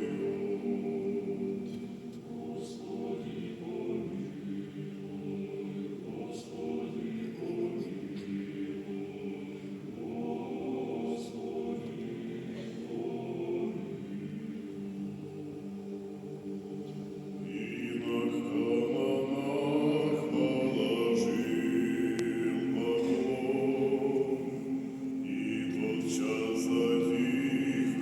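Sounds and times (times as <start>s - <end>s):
choir singing sustained chords: 0.0s - 28.0s.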